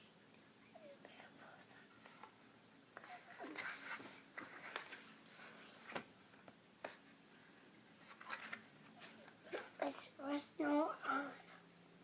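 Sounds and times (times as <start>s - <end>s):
paper rustling: 3.0s - 7.2s, 8.0s - 9.7s.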